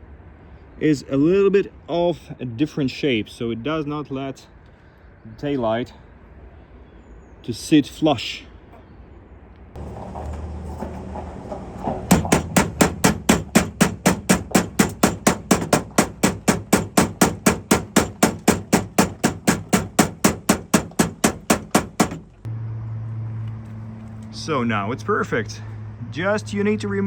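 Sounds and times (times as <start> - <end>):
rapid hammer blows on metal: 10.8 - 22.4.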